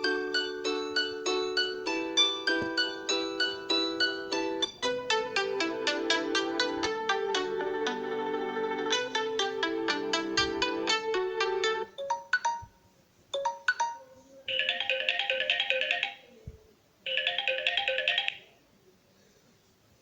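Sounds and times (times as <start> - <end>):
phone ringtone melody: 0.0 - 12.8, 13.4 - 16.3, 17.1 - 18.5
quick rhythmic chiming tune: 0.0 - 12.8, 13.4 - 16.2.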